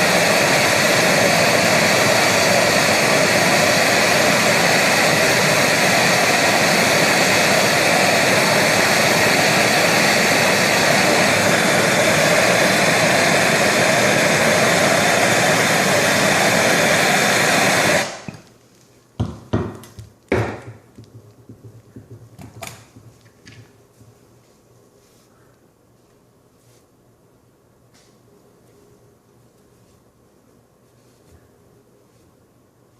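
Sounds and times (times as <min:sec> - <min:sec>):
gas torch flame roaring: 0:00.0 - 0:18.5
sharp knocks and clicks: 0:19.2 - 0:23.7.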